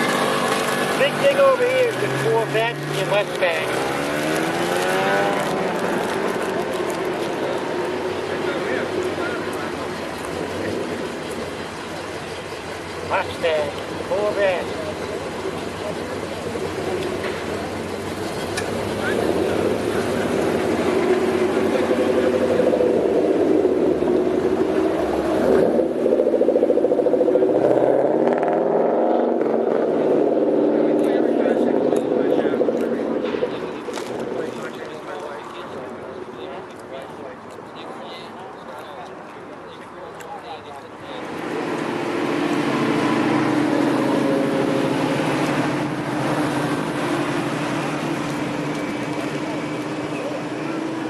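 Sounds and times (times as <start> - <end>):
vehicle engine rumbling: 0.0 - 51.0.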